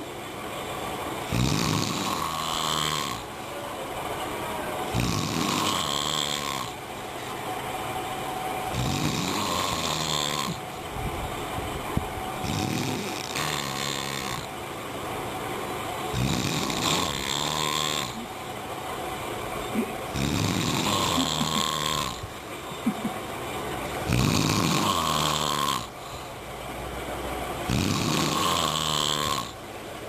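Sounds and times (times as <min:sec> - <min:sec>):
quiet breaths: 0:00.0 - 0:30.0
person snoring loudly: 0:01.2 - 0:03.4, 0:04.8 - 0:06.9, 0:08.7 - 0:10.8, 0:12.4 - 0:14.5, 0:16.1 - 0:18.4, 0:19.6 - 0:23.2, 0:24.0 - 0:26.3, 0:27.6 - 0:29.6.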